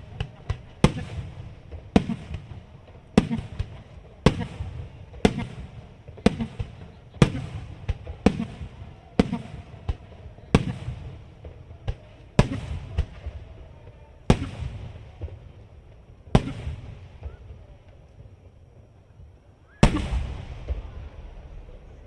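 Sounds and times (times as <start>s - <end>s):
firework shells bursting: 0.0s - 9.7s, 19.8s - 22.0s.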